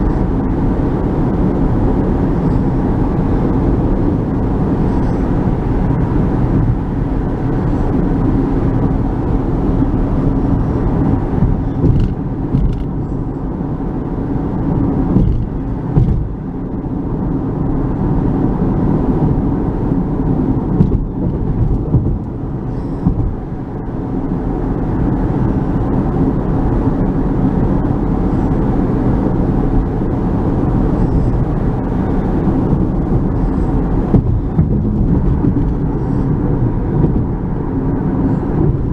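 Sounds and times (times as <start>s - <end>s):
car road and engine noise: 0.0s - 38.9s.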